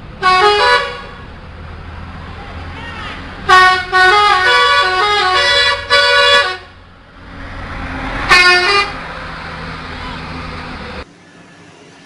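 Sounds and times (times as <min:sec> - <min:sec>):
low road rumble: 0:00.0 - 0:12.0
single horn blast: 0:00.2 - 0:01.2, 0:02.8 - 0:06.7, 0:08.3 - 0:09.0
musical bus horn melody: 0:00.2 - 0:01.3, 0:02.8 - 0:06.7, 0:08.3 - 0:09.0.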